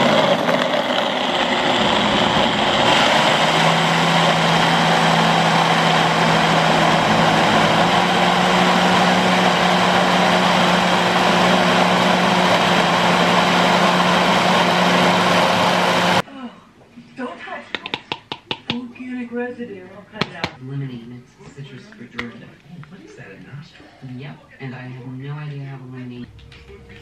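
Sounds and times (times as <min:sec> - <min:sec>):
blender motor whirring: 0:00.0 - 0:16.2.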